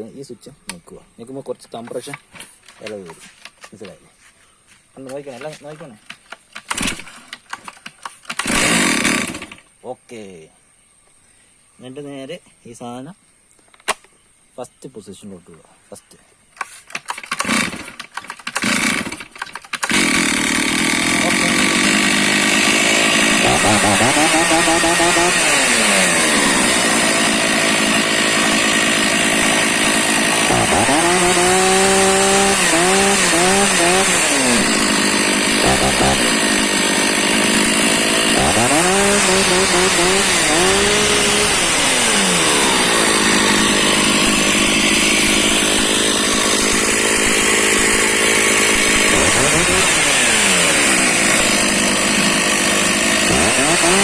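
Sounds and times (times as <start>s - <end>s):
chainsaw revving and idling: 6.6s - 7.2s, 8.3s - 9.7s, 17.2s - 54.0s.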